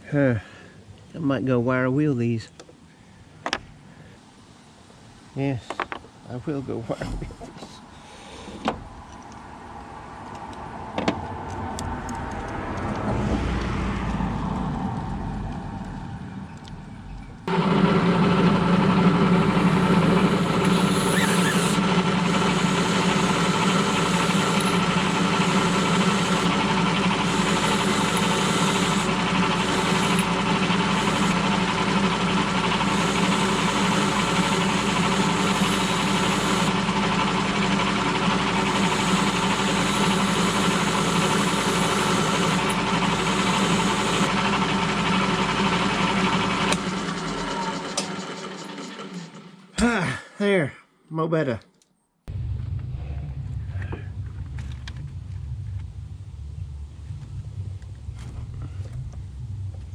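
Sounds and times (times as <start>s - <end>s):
motor-driven wire wheel brushing: 17.8s - 49.6s.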